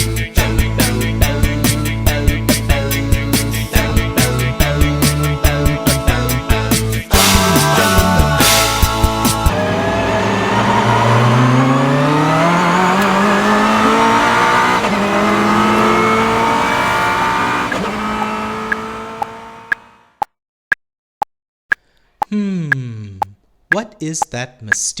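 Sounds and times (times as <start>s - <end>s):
car engine accelerating: 8.4s - 20.2s
steady ticking: 18.2s - 20.3s, 21.7s - 25.0s.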